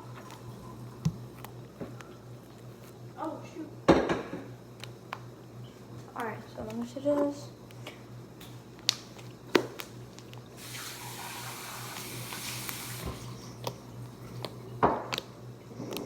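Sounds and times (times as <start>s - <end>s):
water running from tap: 10.5s - 13.6s.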